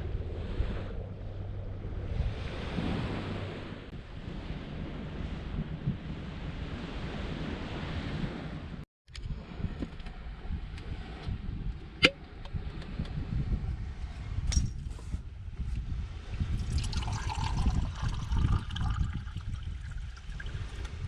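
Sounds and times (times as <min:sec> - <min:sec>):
moving water: 0:00.0 - 0:08.5, 0:16.3 - 0:21.0
wind rumble on microphone: 0:00.0 - 0:21.0.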